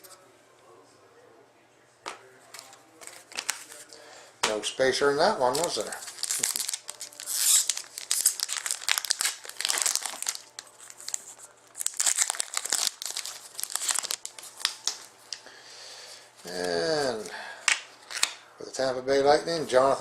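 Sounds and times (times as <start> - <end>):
wrapper tearing and crinkling: 3.0 - 3.8, 5.4 - 15.1.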